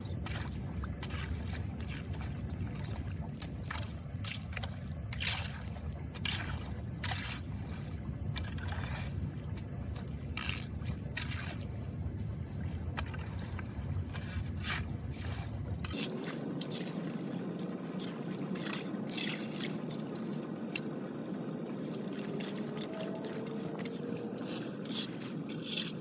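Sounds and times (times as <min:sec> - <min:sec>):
low rumble: 0:00.0 - 0:15.9
water trickling and dripping: 0:00.0 - 0:25.9.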